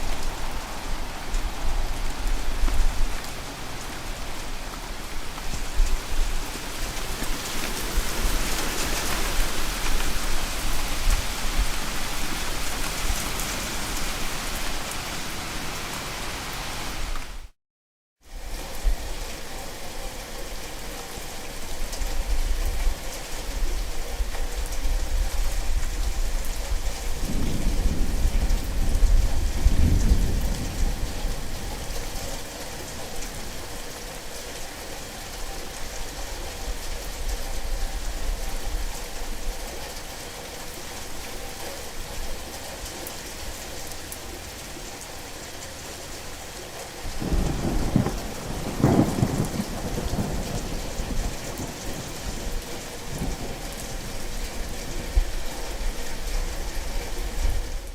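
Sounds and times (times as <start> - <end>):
heavy rain: 0.0 - 17.6, 18.3 - 57.9
rolling thunder: 27.2 - 32.2, 47.2 - 54.2.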